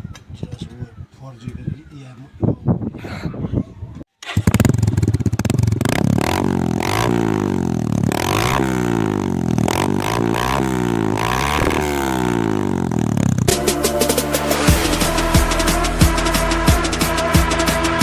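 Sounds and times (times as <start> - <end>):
motorcycle engine revving: 4.2 - 18.0.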